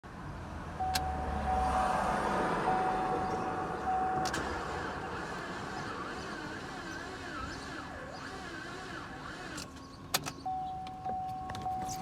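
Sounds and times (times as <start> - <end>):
starter motor cranking: 4.3 - 9.8.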